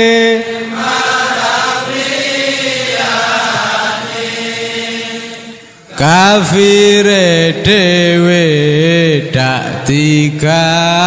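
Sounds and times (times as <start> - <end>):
choir-like backing: 0.0 - 6.8
devotional chanting: 0.0 - 11.0.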